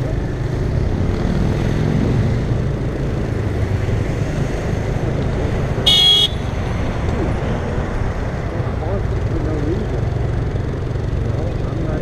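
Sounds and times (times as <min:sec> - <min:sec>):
car engine and road rumble: 0:00.0 - 0:12.0
car horn toot: 0:05.8 - 0:06.5.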